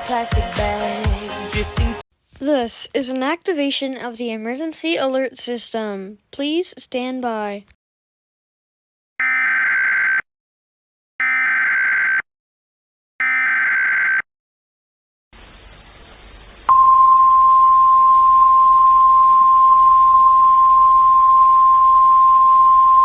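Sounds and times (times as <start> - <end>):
faint static hiss: 15.4 - 16.7.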